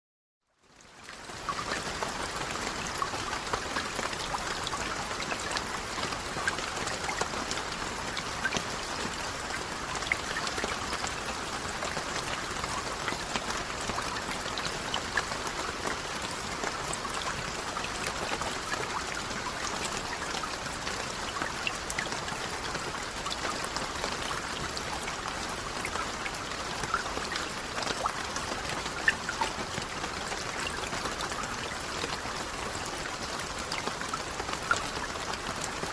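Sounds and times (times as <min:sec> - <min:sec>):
rain drops pattering: 0:00.5 - 0:35.9
trickling water: 0:00.6 - 0:35.9.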